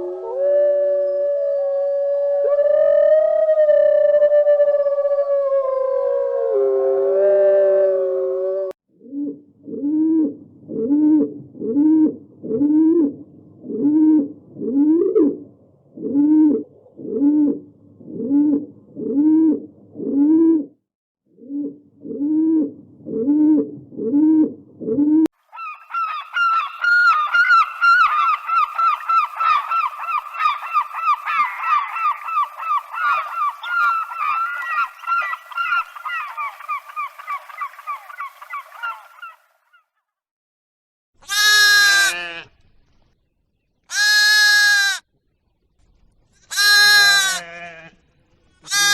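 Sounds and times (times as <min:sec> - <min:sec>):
drawn-out howl: 0:00.0 - 0:08.8.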